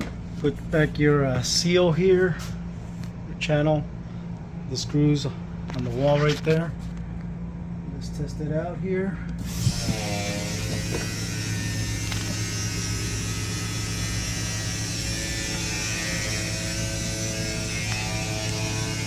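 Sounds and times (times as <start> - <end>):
electric motor humming: 9.4 - 19.0.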